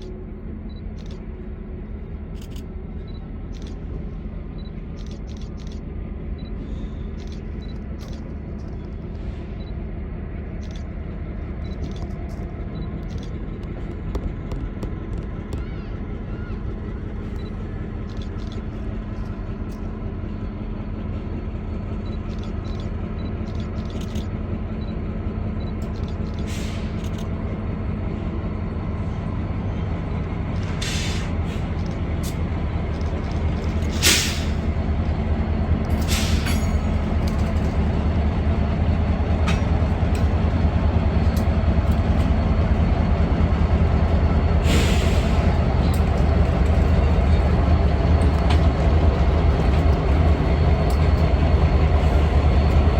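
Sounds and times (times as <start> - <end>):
diesel locomotive engine drone: 0.0 - 52.9
short hisses: 30.8 - 31.6, 44.6 - 45.5.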